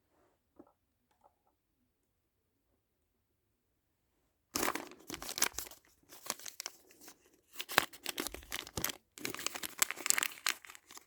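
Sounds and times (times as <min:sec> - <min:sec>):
plastic wrapper tearing and crinkling: 0:04.6 - 0:11.0.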